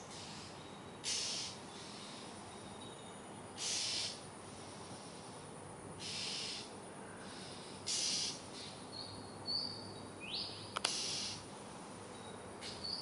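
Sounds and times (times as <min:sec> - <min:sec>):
bird rasping calls: 0:00.2 - 0:02.1, 0:03.6 - 0:04.2, 0:06.0 - 0:06.7, 0:07.4 - 0:08.8, 0:10.8 - 0:11.4
sharp click: 0:10.8 - 0:11.0.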